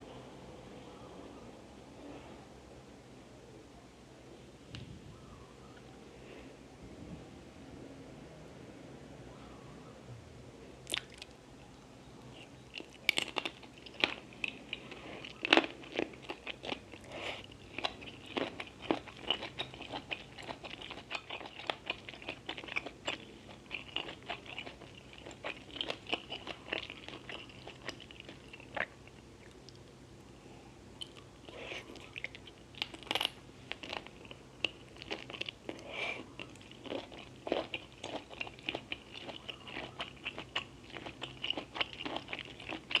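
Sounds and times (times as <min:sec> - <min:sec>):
chewing with crunches: 0:10.8 - 0:11.4, 0:12.2 - 0:30.0, 0:31.0 - 0:43.0.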